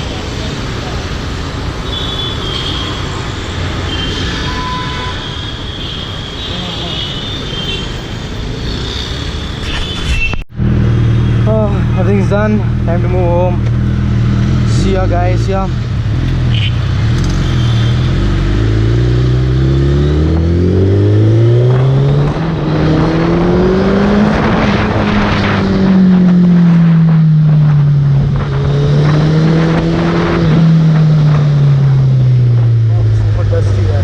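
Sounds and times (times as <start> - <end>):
motorcycle engine accelerating: 10.5 - 34.0.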